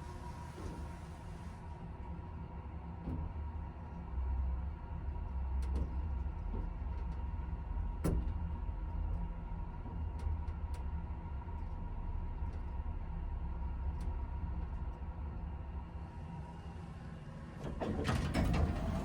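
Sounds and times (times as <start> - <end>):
elevator running rumble: 4.5 - 19.0.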